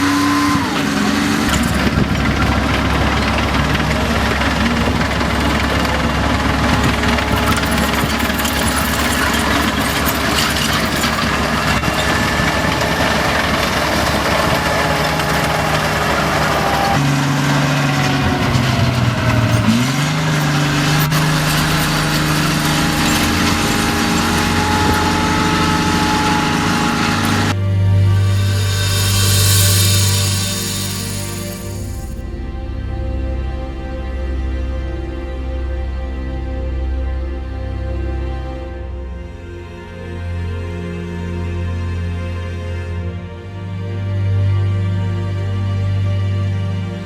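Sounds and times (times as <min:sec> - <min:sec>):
tank engine running: 0:00.0 - 0:32.2.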